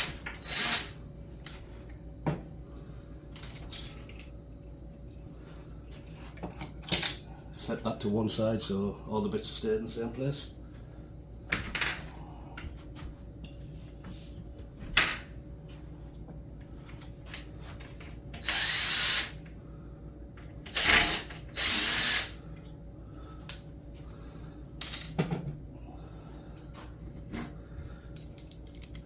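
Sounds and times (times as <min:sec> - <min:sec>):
cordless drill running: 0:00.0 - 0:01.0, 0:18.4 - 0:19.4, 0:20.7 - 0:22.4.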